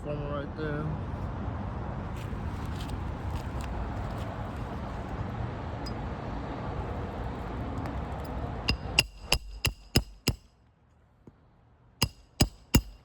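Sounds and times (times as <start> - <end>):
hammer striking roof shingle: 8.7 - 10.4, 12.0 - 13.0.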